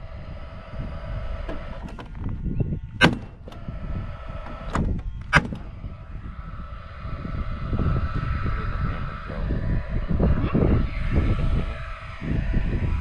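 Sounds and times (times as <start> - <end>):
faint steady hum: 0.0 - 13.0
steady low rumble: 0.0 - 13.0.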